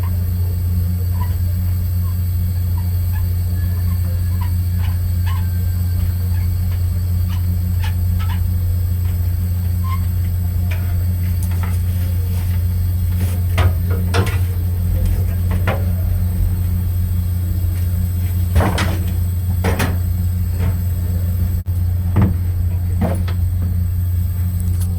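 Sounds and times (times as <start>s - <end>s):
low machinery hum: 0.0s - 24.9s
knocks and clunks of tools: 18.6s - 20.9s, 22.1s - 22.4s.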